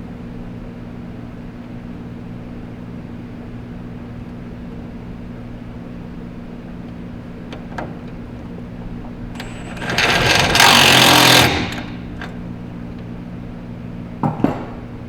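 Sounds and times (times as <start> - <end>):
power tool driving bolt: 9.4 - 12.4.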